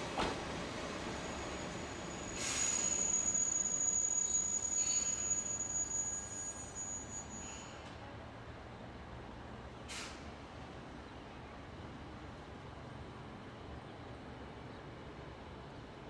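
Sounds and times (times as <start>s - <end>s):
air release hiss: 2.3s - 3.2s, 9.9s - 10.2s.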